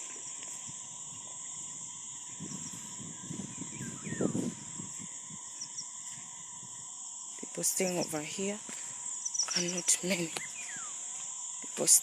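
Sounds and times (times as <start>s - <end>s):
insects droning: 0.0s - 12.0s
bird chirps: 3.2s - 4.4s, 9.2s - 11.0s.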